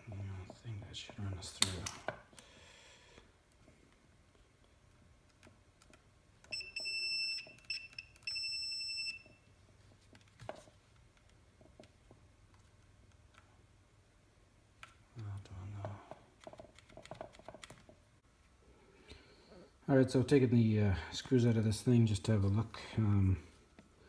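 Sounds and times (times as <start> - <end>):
multimeter beeping: 6.4 - 9.5.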